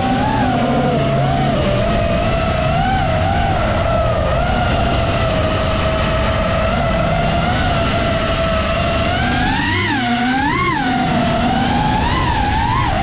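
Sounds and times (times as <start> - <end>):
quadcopter motors whining: 0.0 - 13.0
rough wind rumble: 0.0 - 13.0.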